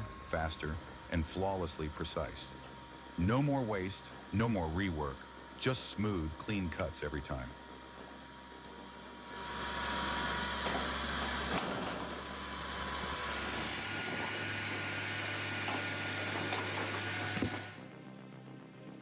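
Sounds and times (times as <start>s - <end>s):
machine motor running: 0.0s - 17.9s
hiss: 9.3s - 17.7s.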